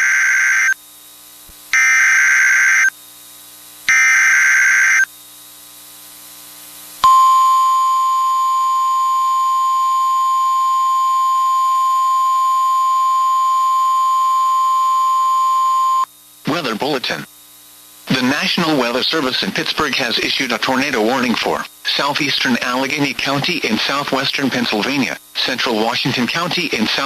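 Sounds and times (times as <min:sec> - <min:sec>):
steady warning alarm tone: 0:00.0 - 0:00.8, 0:01.7 - 0:03.0, 0:03.9 - 0:05.1, 0:07.0 - 0:16.1
digital data bursts: 0:01.8 - 0:02.9, 0:03.9 - 0:05.1.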